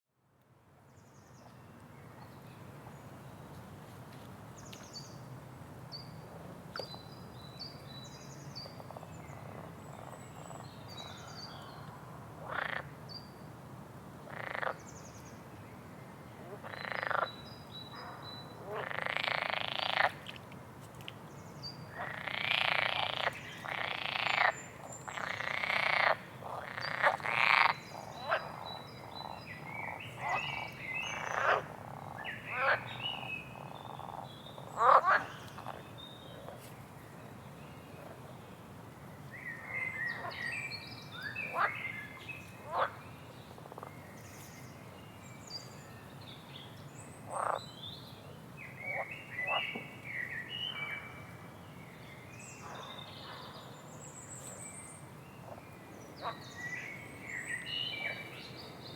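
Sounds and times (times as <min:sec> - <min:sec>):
frogs croaking: 0:12.4 - 0:13.0, 0:14.3 - 0:14.8, 0:16.4 - 0:17.4, 0:18.0 - 0:20.2, 0:21.9 - 0:35.8, 0:41.4 - 0:41.9, 0:42.6 - 0:43.0, 0:47.3 - 0:47.6, 0:48.8 - 0:49.8.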